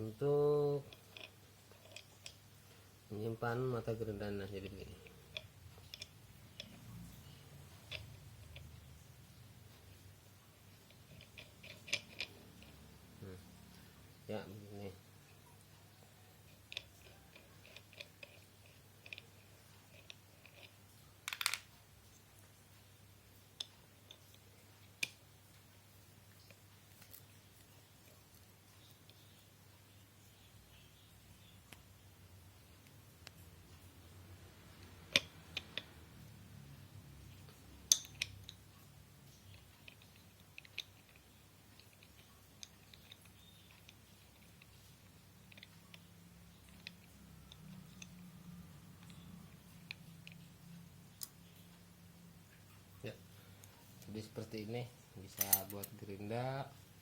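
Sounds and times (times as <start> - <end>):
faint steady low hum: 0.0 - 57.0
hard objects clicking and knocking: 0.8 - 2.5, 4.8 - 9.0, 10.8 - 12.9, 16.5 - 21.7
parts rattling: 0.8 - 2.5, 10.7 - 13.0, 16.5 - 21.7, 55.2 - 56.3
clicks of parts being handled: 19.9 - 21.8, 37.9 - 38.6, 55.3 - 56.0.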